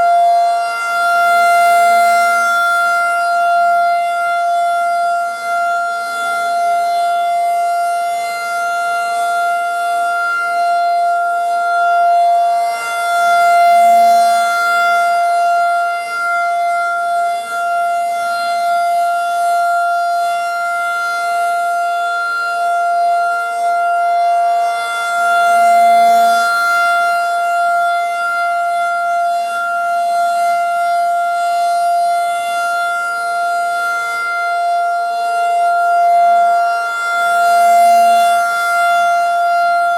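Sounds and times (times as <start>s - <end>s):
faint distant sirens: 0.0s - 39.9s
rotating siren alert tone: 34.4s - 39.9s.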